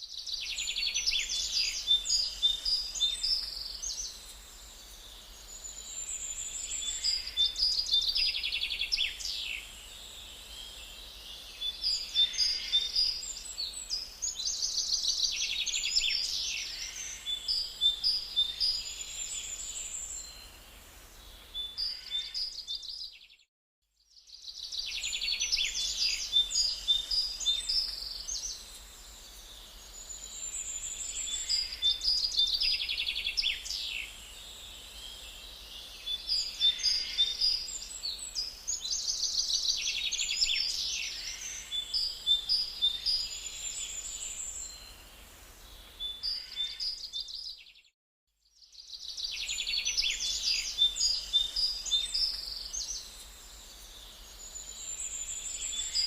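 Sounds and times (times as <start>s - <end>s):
songbirds singing: 0.0s - 56.0s.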